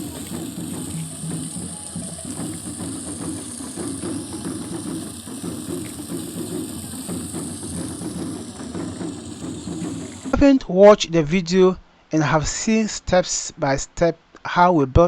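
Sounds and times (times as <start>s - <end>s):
pump hum: 0.0s - 10.4s.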